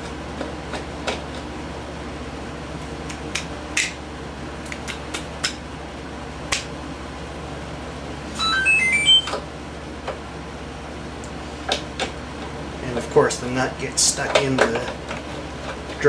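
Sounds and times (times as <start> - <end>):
high squeaking tones: 8.4 - 9.4.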